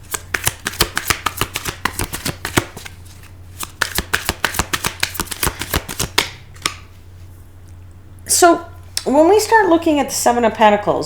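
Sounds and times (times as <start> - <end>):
cards being shuffled by hand: 0.0 - 7.0.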